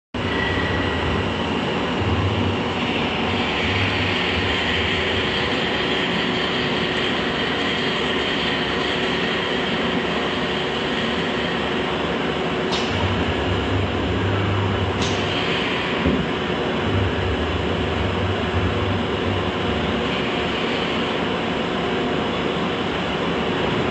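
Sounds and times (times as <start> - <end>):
sharp click: 12.7 - 13.0, 15.0 - 15.3.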